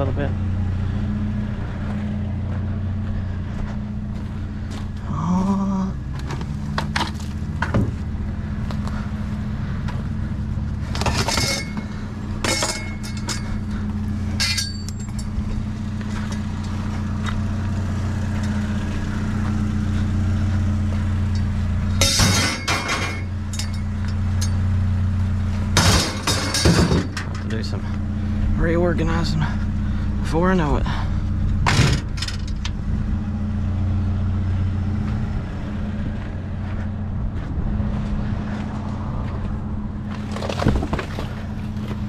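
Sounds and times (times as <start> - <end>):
truck engine running: 0.0 - 42.0
scrap metal clanking: 10.9 - 16.8, 21.4 - 24.6, 25.7 - 27.6.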